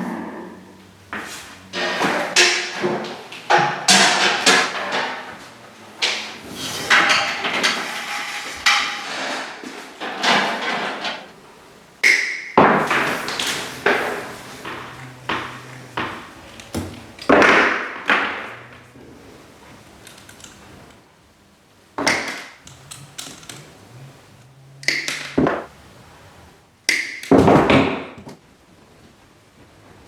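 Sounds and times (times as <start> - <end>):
knocks taps and thuds: 12.0 - 21.0, 22.0 - 28.4
faint low hum: 22.6 - 26.9.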